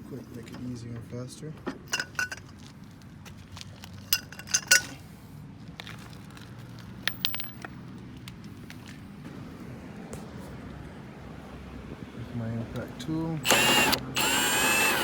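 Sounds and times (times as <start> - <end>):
metal tools clinking: 1.9 - 2.6, 4.0 - 5.0.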